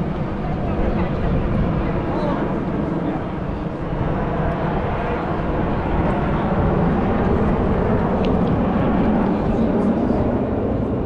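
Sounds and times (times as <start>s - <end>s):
airplane engine roar: 0.0s - 11.0s.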